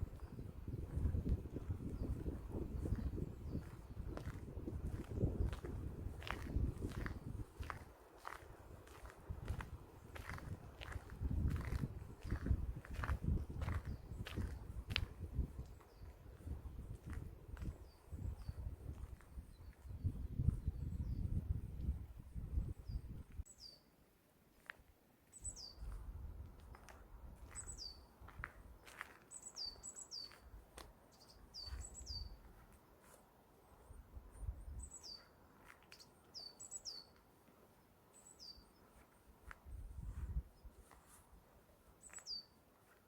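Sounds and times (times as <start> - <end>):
wind rumble on microphone: 0.0 - 23.4, 25.6 - 29.1, 31.6 - 32.6, 33.8 - 35.2, 39.4 - 41.2
songbirds high down-slurred calls: 27.5 - 28.1, 29.3 - 30.5, 31.1 - 32.5, 34.7 - 37.2.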